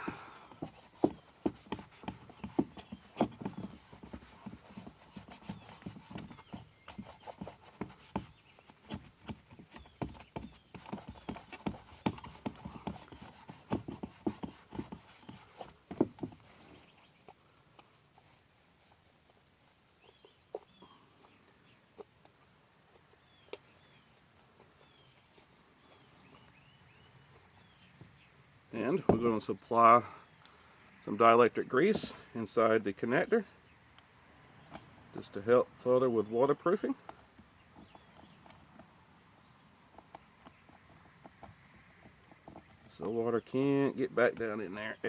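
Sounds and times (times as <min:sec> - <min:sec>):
rag wiping plastic: 0:00.0 - 0:21.4.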